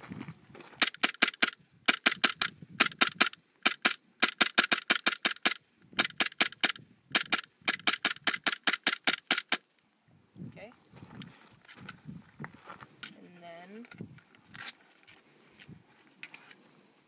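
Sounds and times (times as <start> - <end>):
airsoft pistol shots: 0.8 - 9.6.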